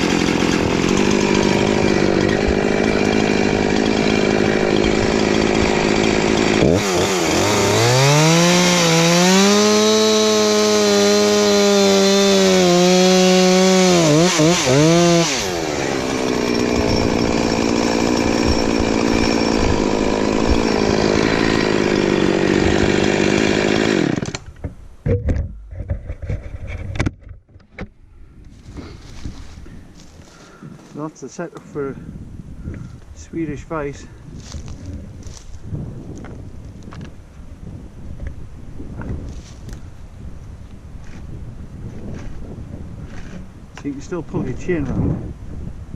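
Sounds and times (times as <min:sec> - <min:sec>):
chainsaw cutting wood: 0:00.0 - 0:24.7.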